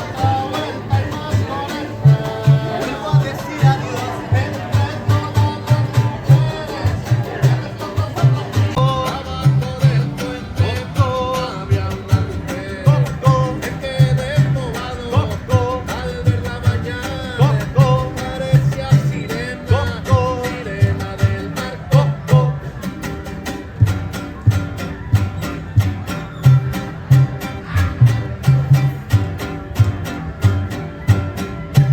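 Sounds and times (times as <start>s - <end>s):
person singing: 0.0s - 22.7s
bouncing bass line: 0.0s - 22.8s
guitar: 0.0s - 31.9s.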